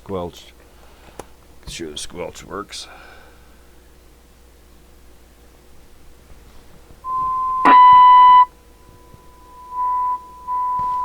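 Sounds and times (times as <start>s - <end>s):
high test tone from radio speaker: 7.1s - 11.0s.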